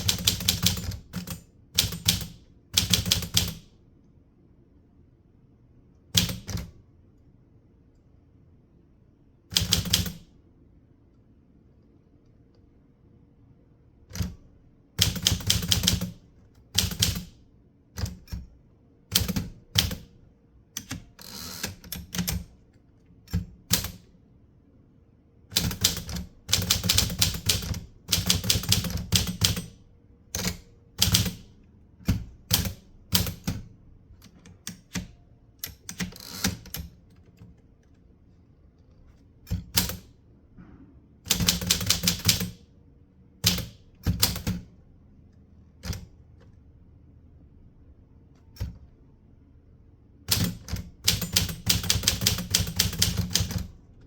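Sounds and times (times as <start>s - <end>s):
typewriter key strikes: 16.8s - 17.4s, 41.3s - 42.6s, 50.3s - 53.7s.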